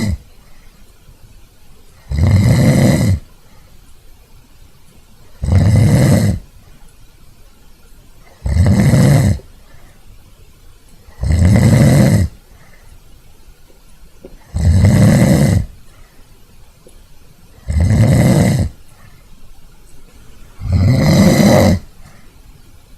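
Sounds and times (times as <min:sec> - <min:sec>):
loud snoring: 0:00.0 - 0:00.2, 0:02.0 - 0:03.3, 0:05.4 - 0:06.5, 0:08.2 - 0:09.5, 0:11.1 - 0:12.4, 0:14.4 - 0:15.8, 0:17.6 - 0:18.8, 0:20.6 - 0:22.0.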